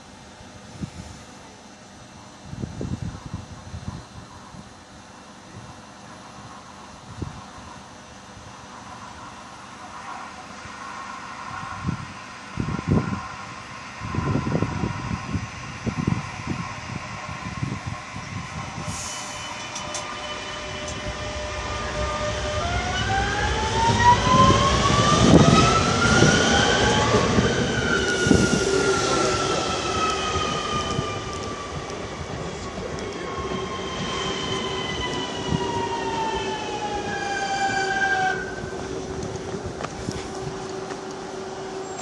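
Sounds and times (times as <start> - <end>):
train traction motors whining: 0.0 - 42.0
train wheels rumbling: 8.6 - 42.0.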